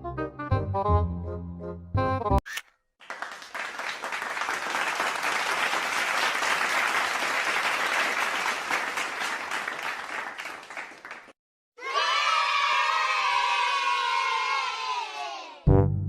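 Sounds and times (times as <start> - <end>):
crowd applause: 3.0 - 11.4.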